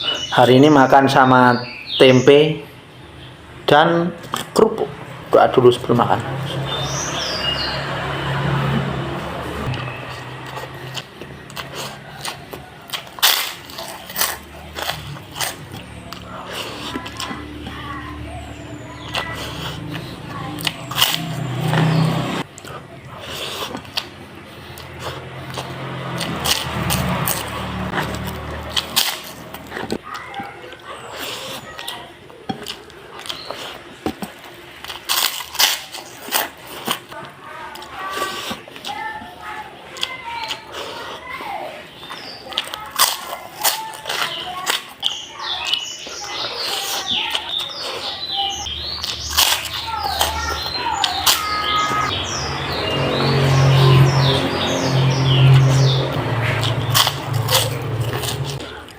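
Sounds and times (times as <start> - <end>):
small birds chirping: 0.0 - 8.3, 9.6 - 34.8, 37.1 - 58.9
person crunching crackers: 10.2 - 17.4, 19.2 - 39.0, 42.0 - 48.0, 48.6 - 51.7, 55.6 - 58.9.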